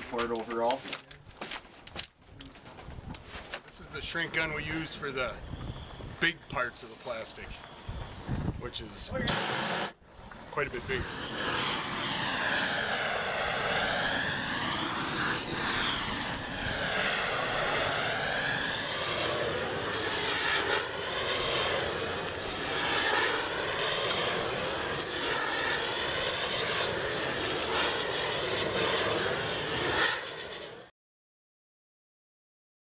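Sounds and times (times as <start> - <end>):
propane heat gun burning: 0.0 - 30.9.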